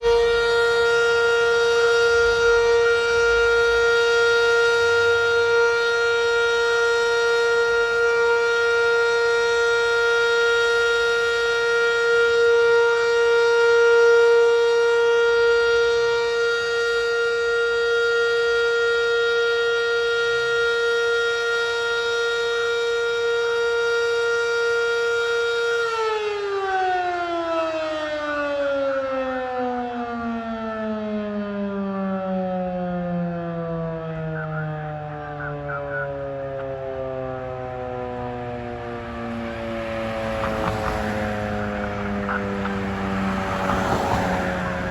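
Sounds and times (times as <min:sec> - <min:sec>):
fire siren winding down: 0:00.0 - 0:44.9.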